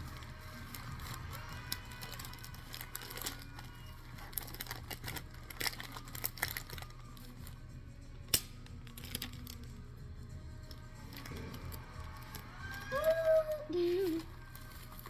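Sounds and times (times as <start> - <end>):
paper rustling: 0.0 - 7.6, 10.7 - 15.0
faint background music: 0.0 - 15.0
tape clicks: 8.2 - 9.8.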